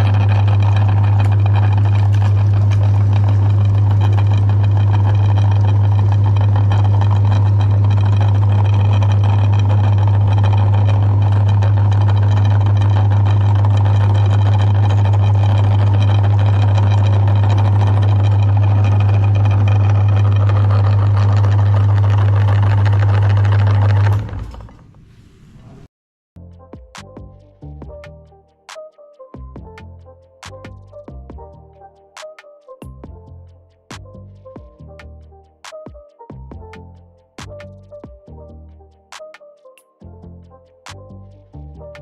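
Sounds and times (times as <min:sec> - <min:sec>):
meat grinder motor humming: 0:00.0 - 0:24.8.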